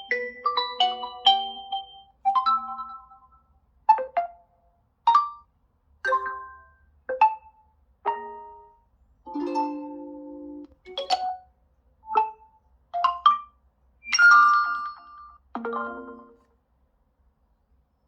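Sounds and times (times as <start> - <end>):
bell-like ringtone melody: 0.0 - 4.2, 14.1 - 16.4.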